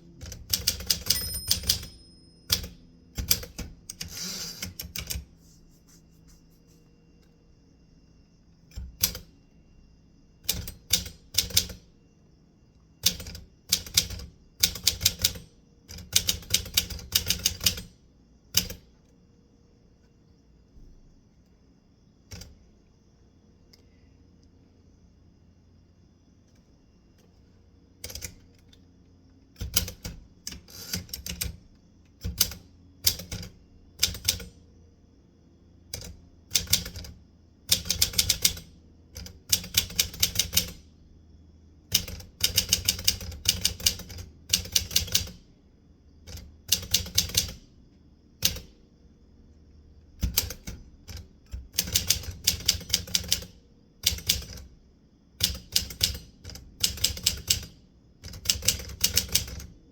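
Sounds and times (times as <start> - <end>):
typewriter keys striking: 0.2 - 5.2.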